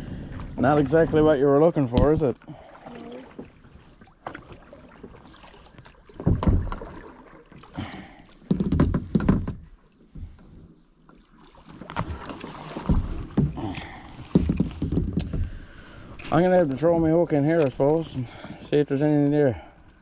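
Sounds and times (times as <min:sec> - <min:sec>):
kayak gear bumping and rustling: 0:03.3 - 0:19.4.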